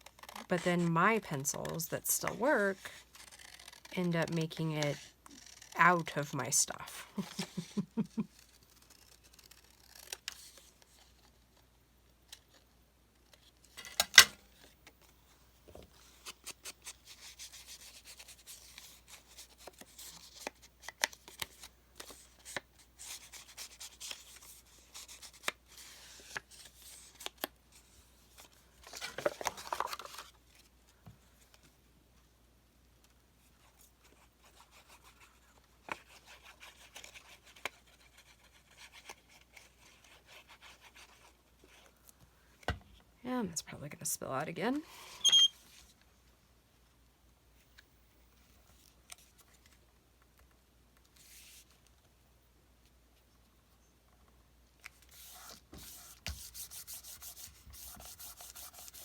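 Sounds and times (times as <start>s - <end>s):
paper scraping and rubbing: 4.9s - 5.8s, 7.2s - 11.1s, 55.1s - 59.0s.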